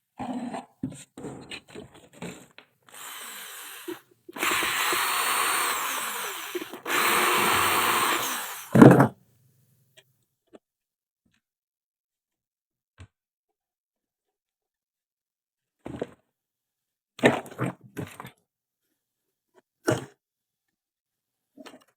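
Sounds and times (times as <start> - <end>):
power drill running: 2.9 - 9.0.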